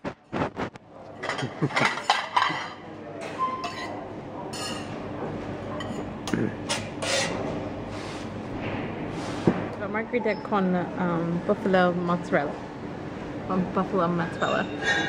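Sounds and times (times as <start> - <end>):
cutlery and plates clinking: 1.2 - 5.0, 14.4 - 15.0.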